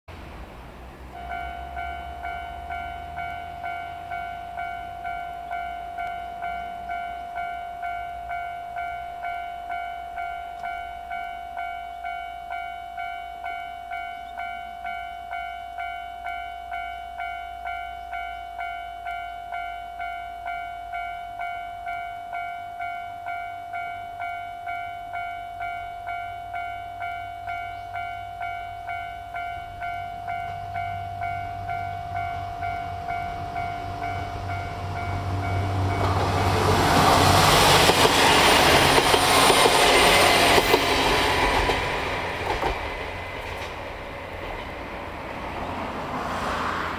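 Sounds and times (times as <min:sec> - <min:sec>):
level-crossing bell clanging: 0:01.1 - 0:36.4.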